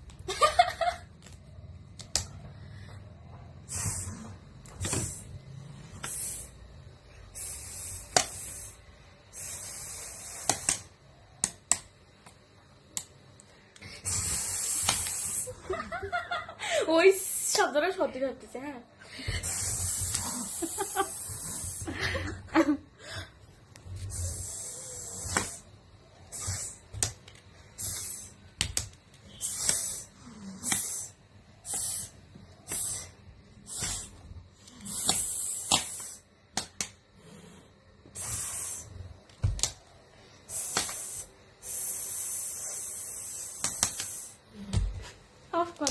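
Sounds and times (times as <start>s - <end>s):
cat hissing: 3.6s - 6.5s, 9.3s - 10.8s, 13.8s - 15.5s, 19.4s - 21.9s, 24.0s - 27.0s, 27.8s - 28.4s, 29.3s - 36.2s, 37.2s - 39.0s.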